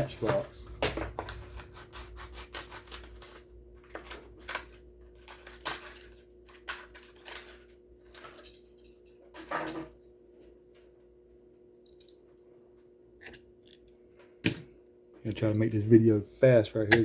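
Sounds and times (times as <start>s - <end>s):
plastic packaging crinkling: 2.8s - 8.8s.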